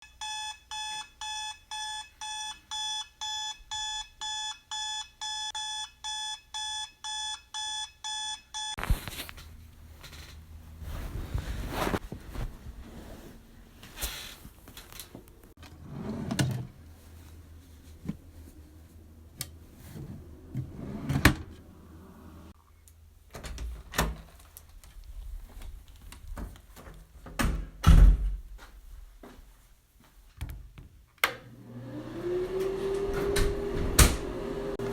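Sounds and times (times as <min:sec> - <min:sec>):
alarm clock beeping: 0:00.0 - 0:08.8
rustling: 0:08.8 - 0:15.6.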